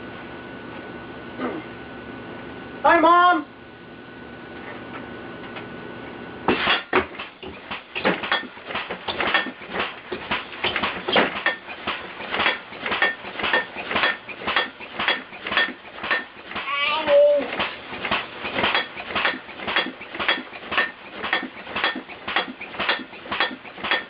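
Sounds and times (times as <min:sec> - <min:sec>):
metal clanking and clattering: 0:06.5 - 0:16.6, 0:17.6 - 0:24.0.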